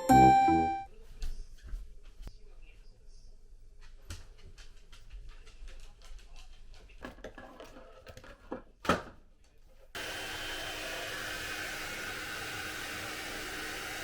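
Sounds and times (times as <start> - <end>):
hair dryer whooshing: 10.0 - 14.0.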